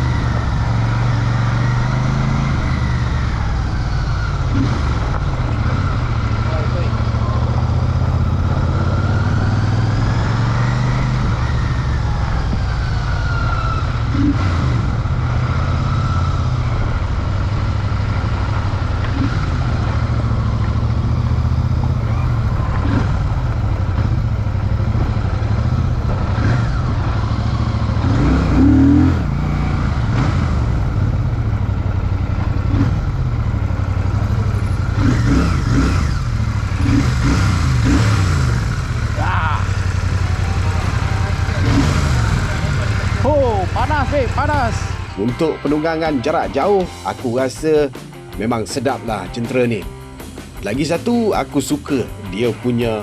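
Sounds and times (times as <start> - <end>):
motorcycle engine running: 0.0 - 53.0.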